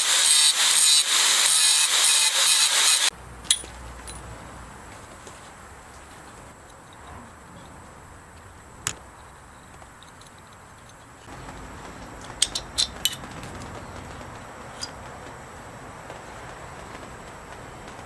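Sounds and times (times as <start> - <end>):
low steady hiss: 3.1 - 18.0
small metal parts clinking: 3.4 - 4.4, 8.4 - 11.3, 12.0 - 15.0.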